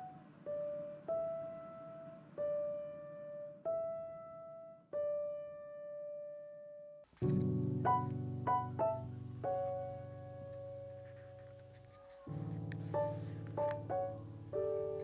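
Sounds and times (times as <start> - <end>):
slow keyboard notes: 7.2 - 15.0.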